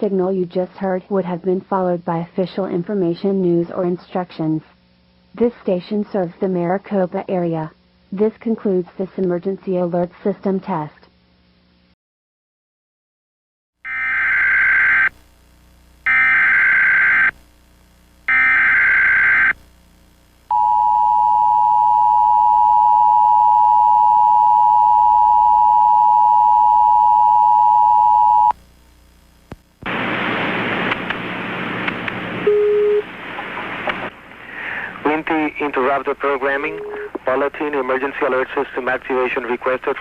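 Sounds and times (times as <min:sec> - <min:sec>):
screeching digital data tones: 0:16.1 - 0:17.3, 0:18.3 - 0:19.6
loud hiss of noise: 0:29.8 - 0:32.5.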